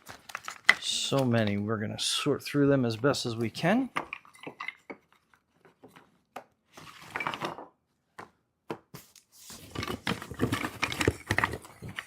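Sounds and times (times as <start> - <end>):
wooden parts knocking and clicking: 3.8 - 6.5.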